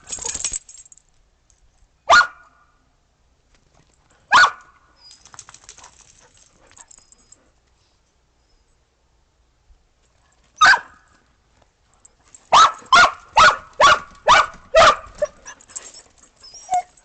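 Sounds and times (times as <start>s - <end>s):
dog barking: 2.1s - 2.5s, 4.3s - 4.7s, 10.6s - 11.0s, 12.5s - 15.4s.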